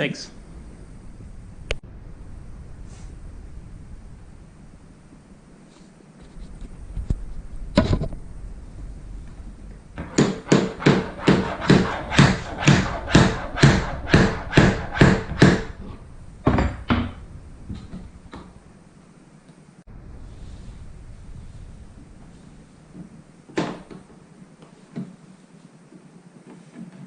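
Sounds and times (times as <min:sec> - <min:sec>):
hammer striking a punch: 0:10.0 - 0:15.7.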